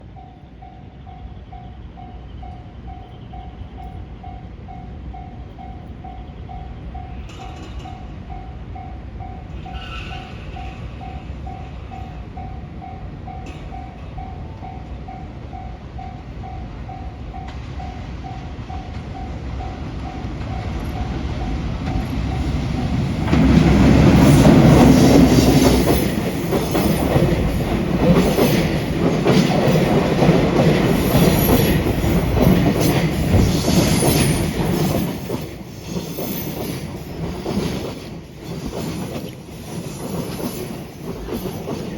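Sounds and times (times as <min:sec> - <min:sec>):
train wheel and rail noise: 0:00.0 - 0:41.9
train wheels knocking: 0:17.4 - 0:41.9.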